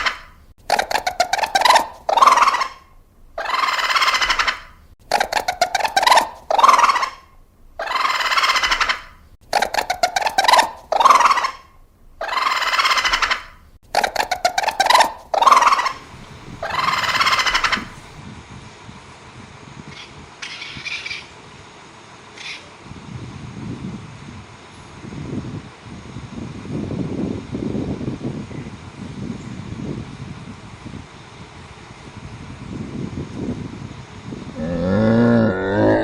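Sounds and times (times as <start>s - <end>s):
turkey gobbling: 0.0s - 18.2s.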